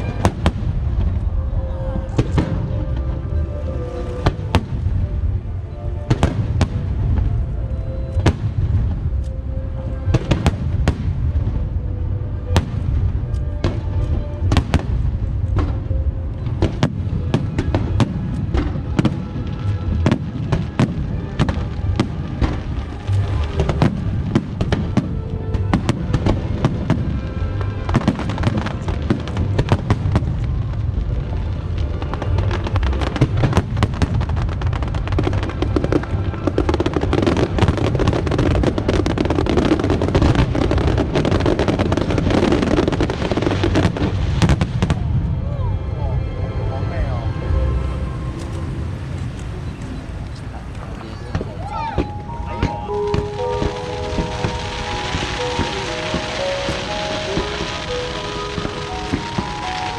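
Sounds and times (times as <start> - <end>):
music playing: 0.0 - 59.9
firework bursts and bangs: 12.5 - 45.3, 49.6 - 59.9.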